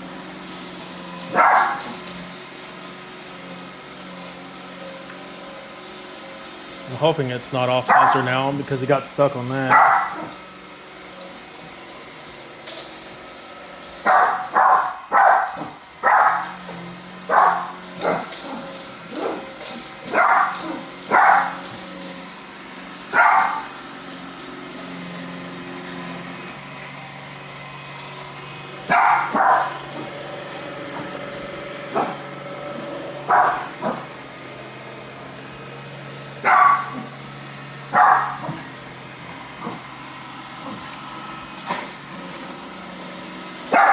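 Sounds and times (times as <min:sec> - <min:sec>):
robot vacuum motor hum: 0:00.0 - 0:43.9
dog barking: 0:01.3 - 0:01.9, 0:07.9 - 0:08.2, 0:09.7 - 0:10.3, 0:14.0 - 0:16.6, 0:17.3 - 0:19.4, 0:20.1 - 0:21.6, 0:23.1 - 0:23.7, 0:28.9 - 0:29.8, 0:31.9 - 0:32.2, 0:33.3 - 0:34.0, 0:36.4 - 0:37.1, 0:37.9 - 0:38.6.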